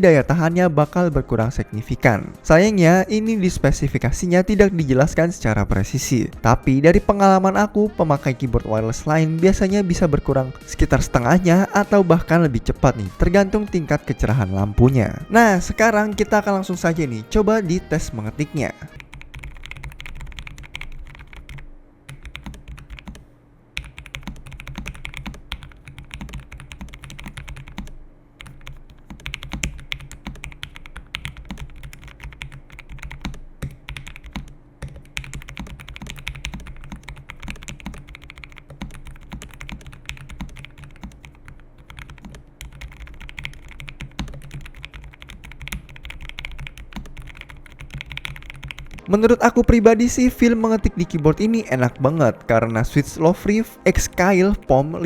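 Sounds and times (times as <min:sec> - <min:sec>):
low steady hum: 0:00.0 - 0:55.0
typing on mechanical keyboard: 0:19.0 - 0:23.2, 0:23.8 - 0:49.0.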